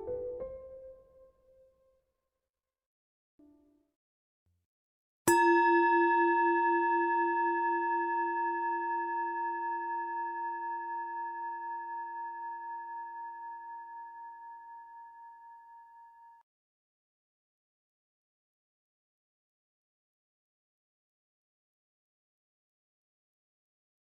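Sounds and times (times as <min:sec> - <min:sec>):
singing bowl ringing: 0:05.3 - 0:16.4.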